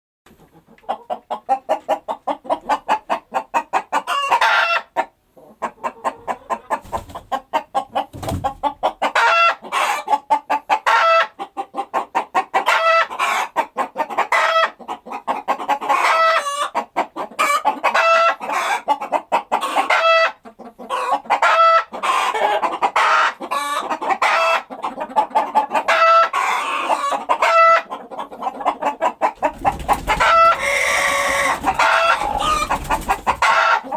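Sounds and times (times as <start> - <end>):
chickens clucking and squawking: 0.3 - 33.9.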